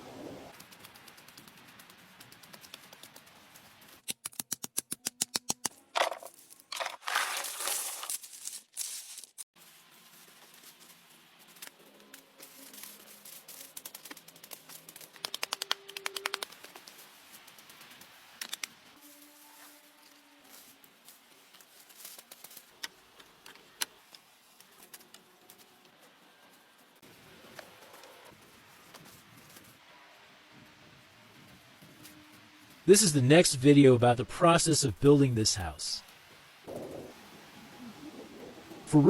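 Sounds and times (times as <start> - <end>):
rustling or scraping: 6.0 - 15.1.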